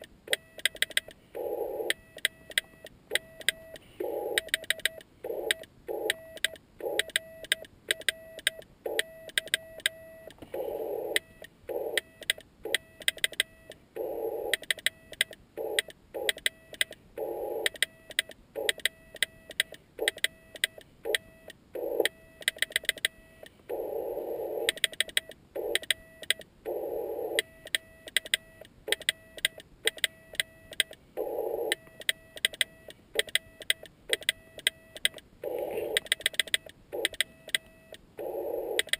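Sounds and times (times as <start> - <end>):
morse code tone: 25.6 - 38.9.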